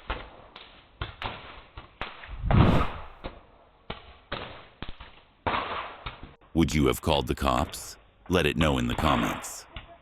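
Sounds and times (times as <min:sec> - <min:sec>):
heavy deep thud: 0:02.3 - 0:03.2.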